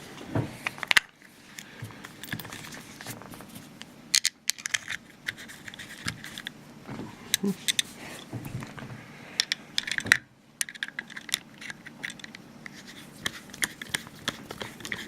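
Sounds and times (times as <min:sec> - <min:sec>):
small clicks taps and scrapes: 0:01.6 - 0:06.6, 0:09.4 - 0:15.0.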